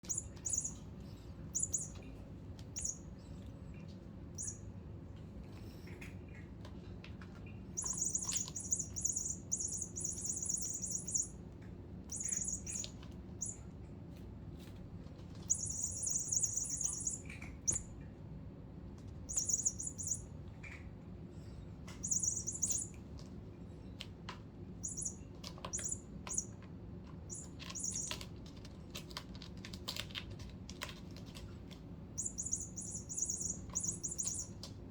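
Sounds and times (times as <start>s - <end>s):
toy rat squeaking: 0.0s - 0.9s, 1.5s - 2.1s, 2.7s - 3.2s, 4.4s - 4.7s, 7.8s - 11.4s, 12.1s - 13.6s, 15.4s - 17.9s, 19.2s - 20.3s, 21.9s - 23.0s, 24.8s - 26.6s, 27.2s - 28.4s, 32.2s - 34.8s.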